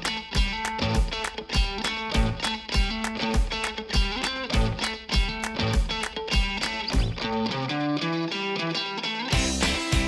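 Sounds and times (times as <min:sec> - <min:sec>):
kick drum beat: 0:00.0 - 0:07.3, 0:09.3 - 0:10.0
strummed guitar: 0:00.0 - 0:10.0.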